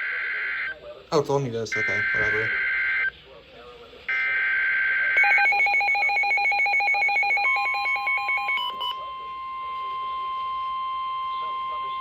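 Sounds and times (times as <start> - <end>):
steady warning alarm tone: 1.5 - 3.1, 4.1 - 12.0.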